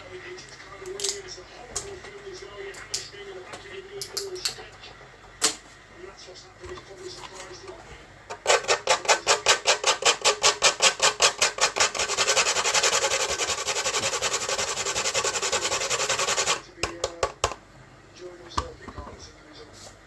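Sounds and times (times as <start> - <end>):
food grating on a grater: 8.3 - 16.6.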